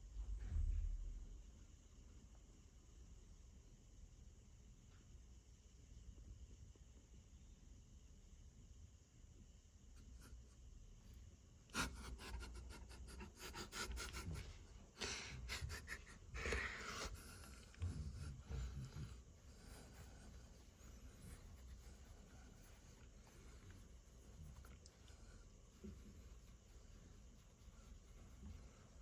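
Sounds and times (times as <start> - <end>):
rubbing and scratching: 11.8 - 14.7, 15.3 - 29.0
dog breathing and snuffling: 11.8 - 29.0.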